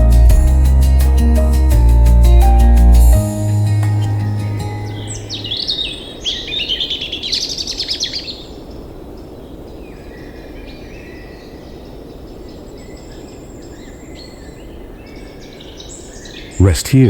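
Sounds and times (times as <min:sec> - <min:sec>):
birdsong chirps and trill: 0:04.0 - 0:16.6
faint distant bird calls: 0:04.8 - 0:16.7
outdoor ambience: 0:16.6 - 0:17.0.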